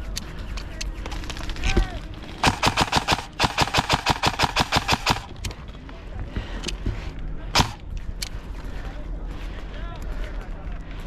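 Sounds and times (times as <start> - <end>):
airsoft rifle firing: 2.4 - 5.4, 7.6 - 7.8
sharp crack: 2.4 - 5.5, 7.6 - 7.8.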